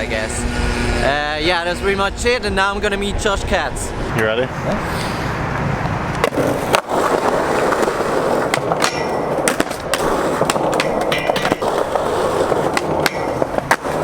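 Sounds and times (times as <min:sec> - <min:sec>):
skateboard rolling on pavement: 0:04.6 - 0:14.0
skateboard wheels clacking: 0:06.2 - 0:14.0.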